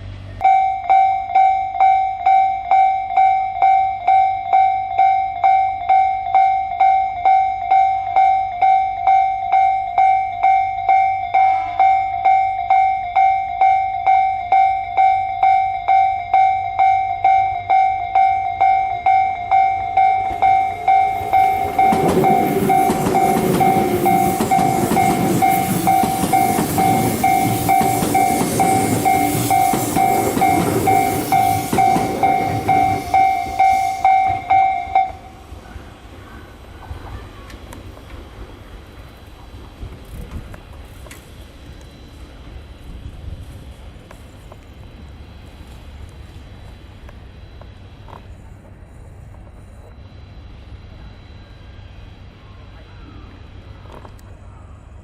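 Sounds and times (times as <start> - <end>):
train passing: 0.0 - 55.0
level-crossing warning bell: 0.4 - 36.0.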